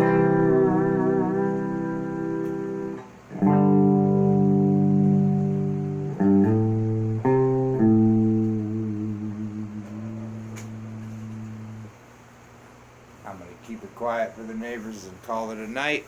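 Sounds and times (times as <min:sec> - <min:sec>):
electric guitar chords: 0:00.0 - 0:12.0.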